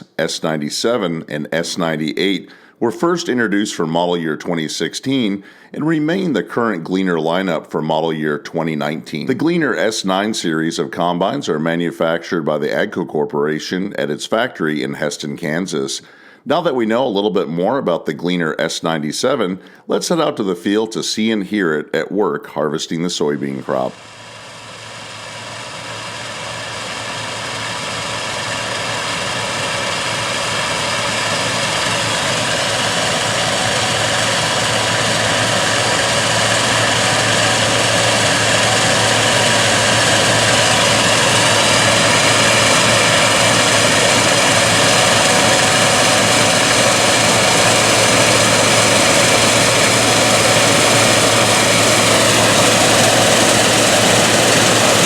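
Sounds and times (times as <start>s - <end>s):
combine harvester engine drone: 23.7s - 55.0s
high machinery whine: 23.7s - 55.0s.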